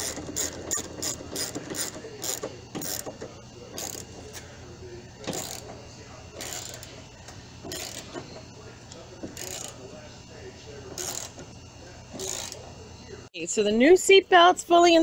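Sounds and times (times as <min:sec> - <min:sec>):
ratchet wrench clicking: 0:00.0 - 0:03.2, 0:03.8 - 0:04.2, 0:05.2 - 0:05.7, 0:06.4 - 0:06.9, 0:07.7 - 0:08.2, 0:09.3 - 0:09.8, 0:11.0 - 0:11.4, 0:12.2 - 0:12.6.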